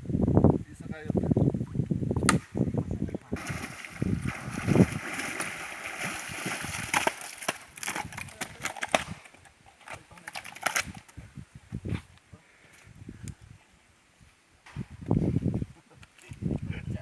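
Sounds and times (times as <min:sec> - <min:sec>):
water splashing and sloshing: 0:03.4 - 0:08.9.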